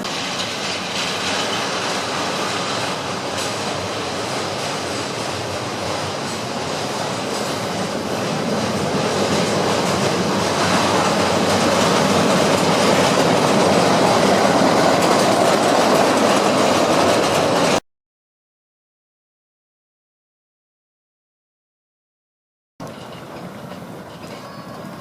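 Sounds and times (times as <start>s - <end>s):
train running along tracks: 0.0s - 17.8s, 22.8s - 25.0s.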